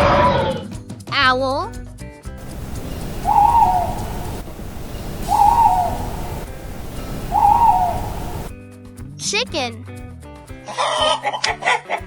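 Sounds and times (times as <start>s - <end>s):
owl hooting: 2.4s - 8.6s
steady background hiss: 2.4s - 8.6s.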